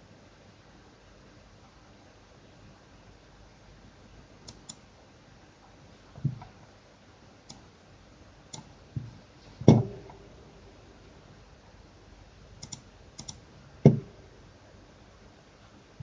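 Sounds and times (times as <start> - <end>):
computer mouse clicking: 4.4 - 4.8, 8.5 - 8.7, 12.6 - 14.0
dull thumps: 9.0 - 10.2, 13.8 - 14.2.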